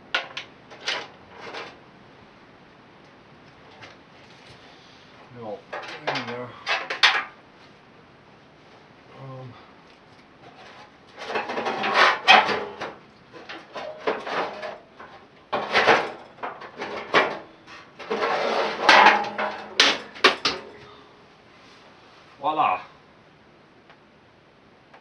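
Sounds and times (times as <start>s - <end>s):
metal parts clattering and scraping: 0.2s - 1.8s, 5.7s - 7.4s, 10.4s - 20.8s.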